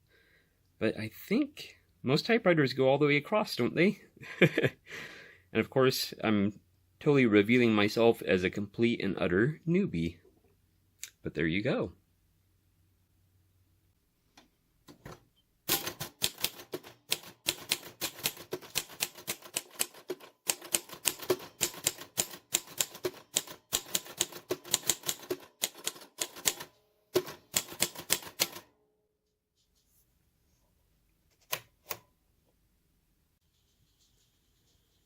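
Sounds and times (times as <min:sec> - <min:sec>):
manual typewriter keystrokes: 0:15.7 - 0:28.7.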